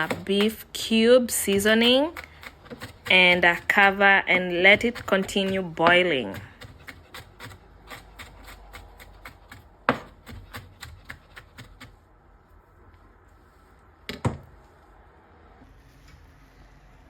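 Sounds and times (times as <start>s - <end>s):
knife chopping on cutting board: 0.0s - 0.6s, 1.4s - 12.0s.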